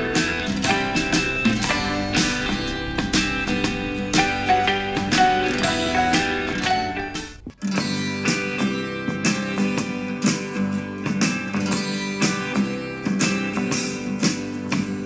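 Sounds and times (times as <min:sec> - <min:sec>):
country folk song on small speaker: 0:00.0 - 0:07.2.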